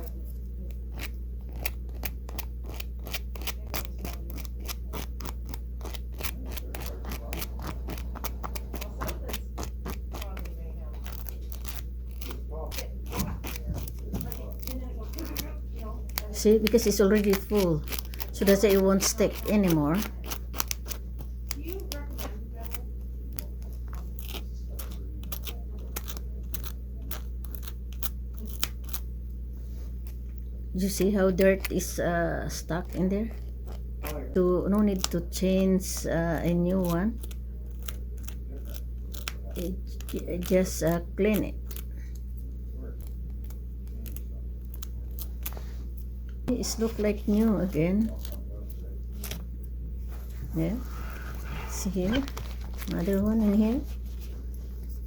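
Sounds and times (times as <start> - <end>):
steady low hum: 0.0 - 55.0
seam ripper scraping velcro: 0.9 - 22.8.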